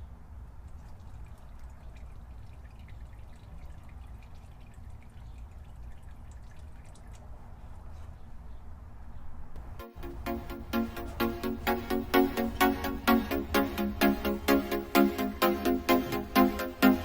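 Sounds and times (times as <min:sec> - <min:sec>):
oil dripping into a pan: 0:00.6 - 0:07.3.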